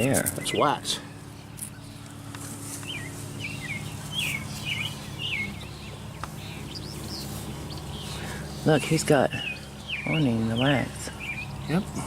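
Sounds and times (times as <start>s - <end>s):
honeybees humming: 0.0s - 12.0s
songbird chirping: 0.0s - 12.0s.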